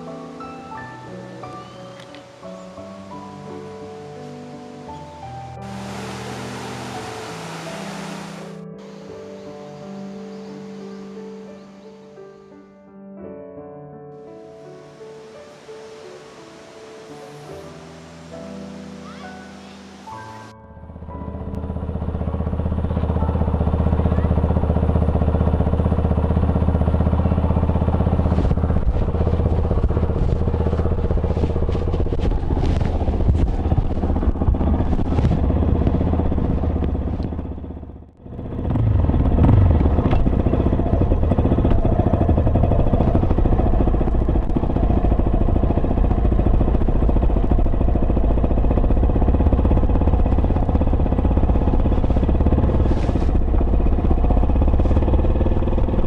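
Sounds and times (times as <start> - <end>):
motorcycle engine running: 4.9 - 9.0, 20.2 - 56.0.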